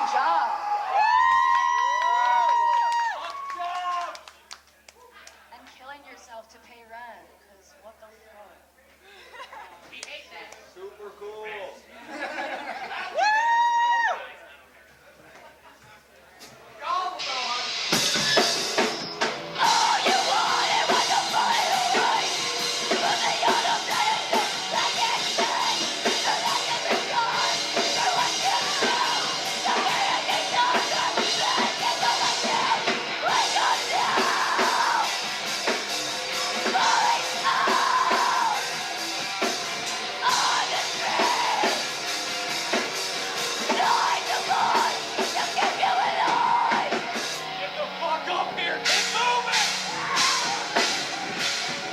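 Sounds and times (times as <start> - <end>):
shouted vocals: 0.0 - 4.2, 13.1 - 14.3, 19.6 - 35.4, 36.3 - 39.0, 40.0 - 41.9, 43.6 - 47.5, 48.1 - 51.6
drum kit beat: 16.9 - 48.1, 48.8 - 51.9
live rock band: 17.6 - 51.9.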